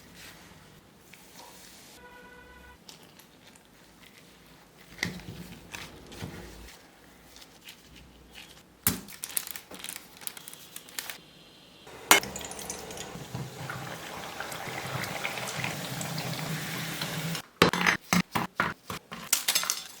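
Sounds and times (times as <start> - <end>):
utensils and dishes clinking: 11.9 - 18.0, 19.2 - 20.0.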